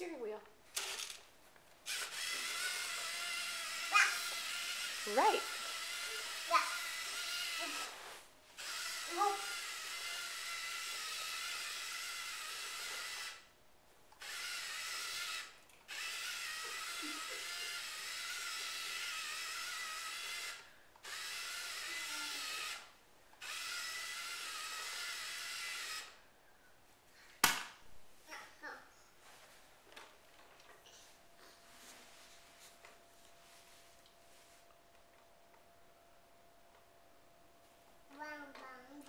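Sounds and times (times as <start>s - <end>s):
toy electric motor whirring: 0.7s - 13.5s, 14.1s - 26.2s.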